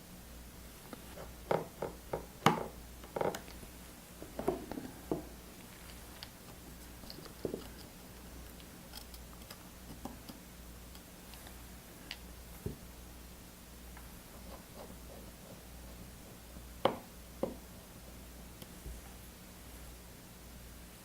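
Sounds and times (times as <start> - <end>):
small screws and metal clicking: 7.0 - 11.5.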